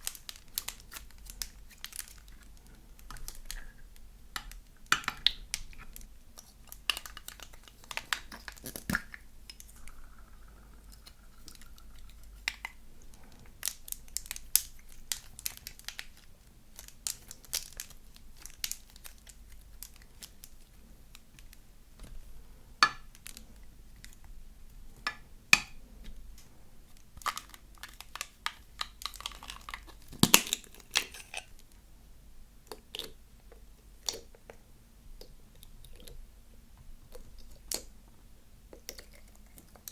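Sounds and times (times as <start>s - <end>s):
slime crackling and popping: 0.0s - 10.0s, 10.9s - 21.6s, 22.8s - 24.3s, 26.9s - 31.7s.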